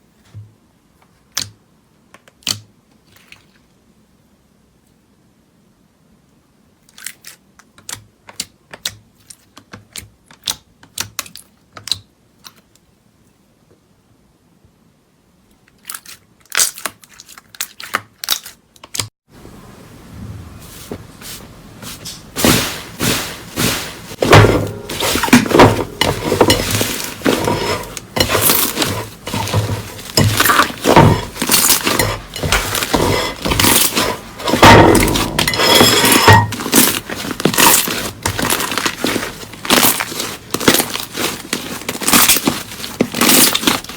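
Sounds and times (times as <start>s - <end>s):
slime clicking and crackling: 36.6s - 43.9s.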